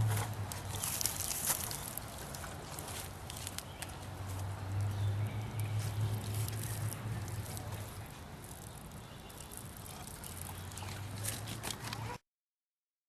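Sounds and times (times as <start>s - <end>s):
water pouring and trickling: 5.6s - 11.8s.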